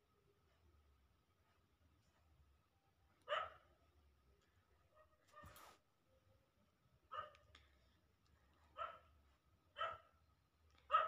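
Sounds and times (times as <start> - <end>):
dog barking: 3.2 - 3.7, 7.1 - 7.5, 8.7 - 9.1, 9.7 - 10.1.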